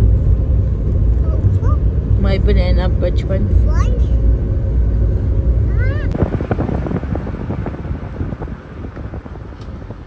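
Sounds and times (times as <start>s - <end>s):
wind buffeting microphone: 4.6s - 10.0s.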